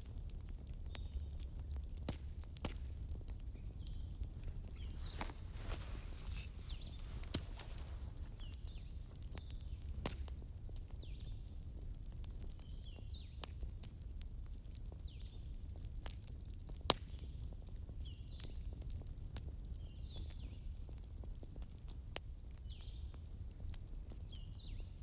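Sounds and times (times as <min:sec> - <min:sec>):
fire popping: 0:01.6 - 0:11.6.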